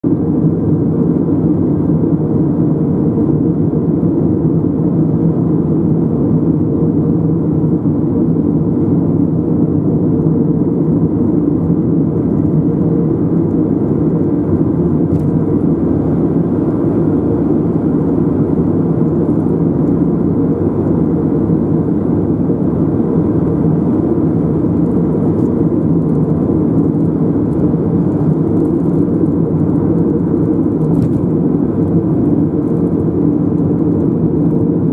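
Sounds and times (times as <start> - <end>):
car road noise: 10.9 - 34.9.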